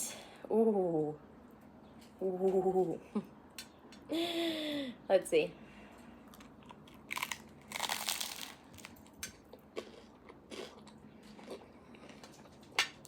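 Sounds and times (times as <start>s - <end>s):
soft chewing crunches: 5.9s - 13.0s
crunchy toast bite: 6.3s - 13.0s.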